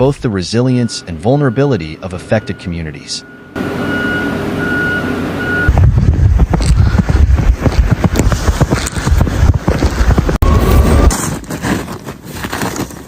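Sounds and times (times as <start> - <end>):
reversing beeper beeps: 0.6 - 5.8, 10.4 - 11.1
loud uneven rumbling: 5.7 - 12.9.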